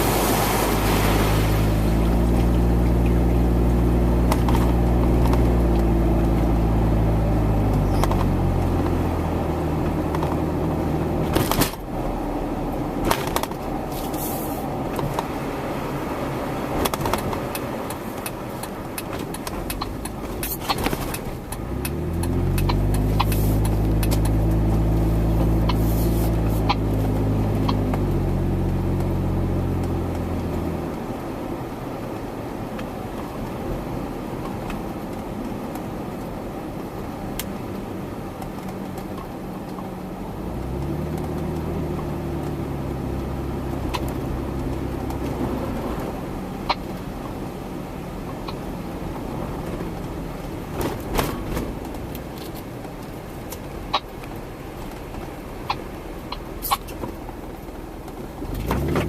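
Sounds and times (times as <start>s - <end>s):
low engine running: 0.0s - 31.1s, 37.2s - 59.0s
sharp clicks: 16.8s - 24.4s.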